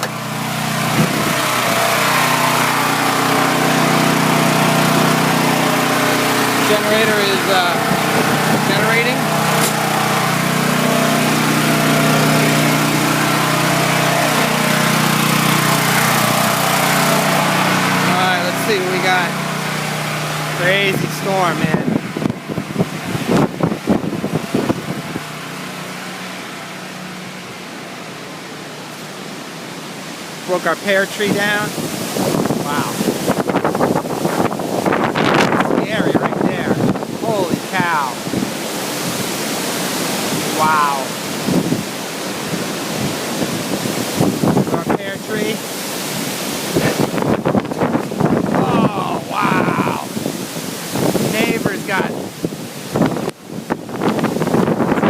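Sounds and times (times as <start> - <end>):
irregular loud bursts: 0.0 - 30.4
generator engine running: 0.0 - 55.0
wind noise: 0.9 - 2.1, 20.8 - 25.4, 31.3 - 39.4, 40.1 - 55.0.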